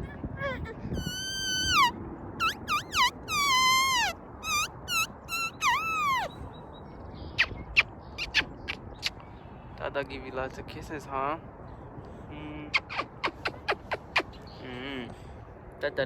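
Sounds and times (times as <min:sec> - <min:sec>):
baby squealing: 0:00.0 - 0:06.3, 0:12.7 - 0:14.3.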